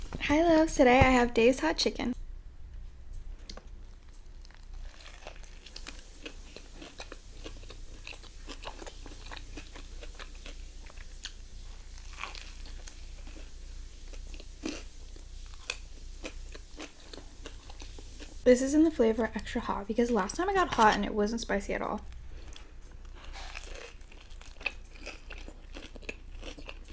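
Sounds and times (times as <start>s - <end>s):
crunching fried chicken: 3.4s - 18.4s, 22.1s - 26.9s.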